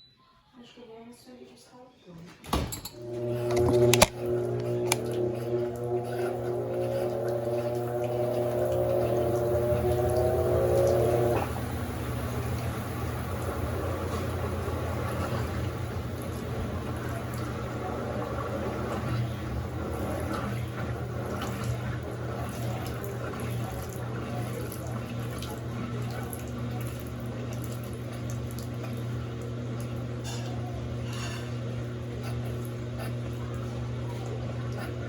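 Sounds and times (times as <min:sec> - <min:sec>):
water rushing into washing machine: 0:02.8 - 0:35.0
low hum: 0:02.9 - 0:27.1.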